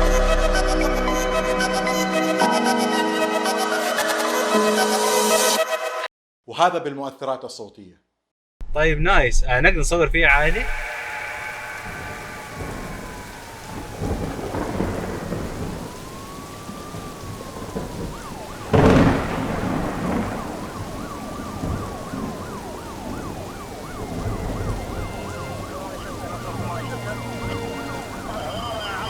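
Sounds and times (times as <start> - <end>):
loud thunderclap: 10.3 - 29.0
steady rain: 10.3 - 29.0
police siren wailing: 10.4 - 29.0.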